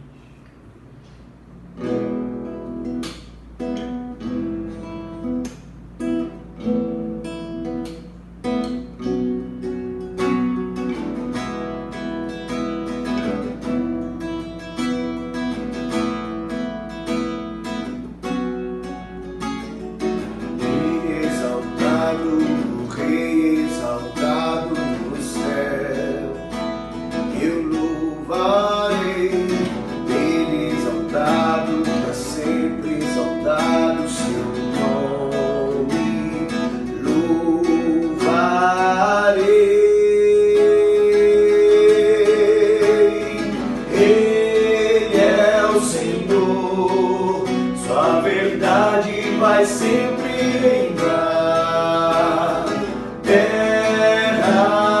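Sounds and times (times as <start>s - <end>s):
acoustic guitar strumming: 0.0s - 55.0s
person singing: 20.6s - 26.5s, 27.2s - 55.0s.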